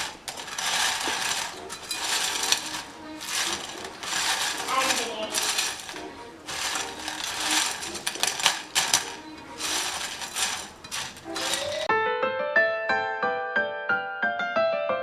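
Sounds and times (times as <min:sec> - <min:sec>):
faint background music: 0:00.0 - 0:11.9
potato snacks rattling and crunching: 0:00.0 - 0:11.9
piano music: 0:00.0 - 0:15.0.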